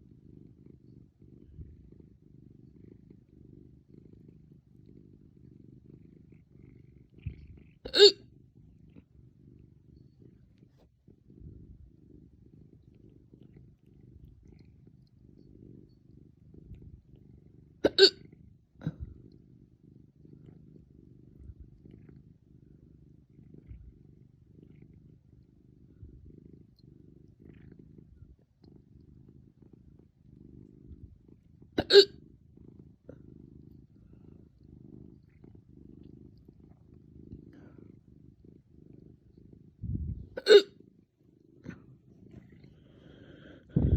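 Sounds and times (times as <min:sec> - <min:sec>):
person hiccuping: 0:07.9 - 0:08.2, 0:17.8 - 0:18.2, 0:31.8 - 0:32.1, 0:40.4 - 0:40.7.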